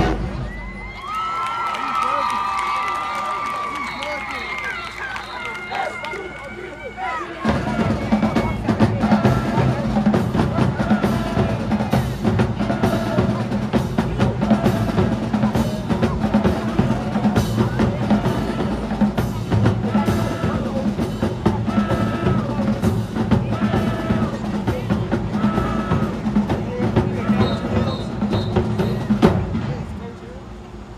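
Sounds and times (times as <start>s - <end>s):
held horn notes: 0.0s - 0.8s, 3.8s - 29.4s
bass and snare drums: 0.0s - 1.0s, 7.4s - 30.0s.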